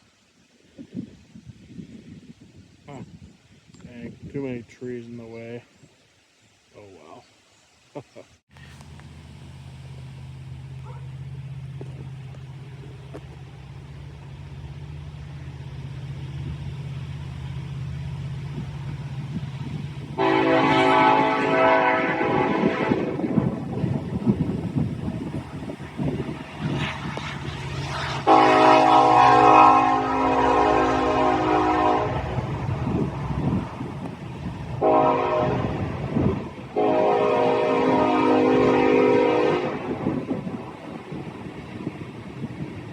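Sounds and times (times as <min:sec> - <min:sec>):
diesel locomotive engine rumble: 0:08.5 - 0:42.9
train horn blasts: 0:18.6 - 0:24.4, 0:27.9 - 0:33.9, 0:34.6 - 0:40.6.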